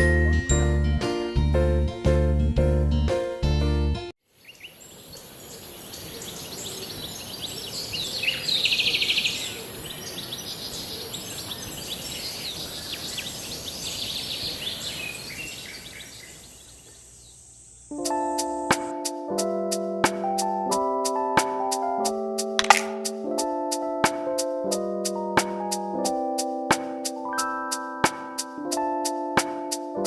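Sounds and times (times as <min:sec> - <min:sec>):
small birds chirping: 0:04.3 - 0:18.9
high-pitched insect drone: 0:16.0 - 0:18.9.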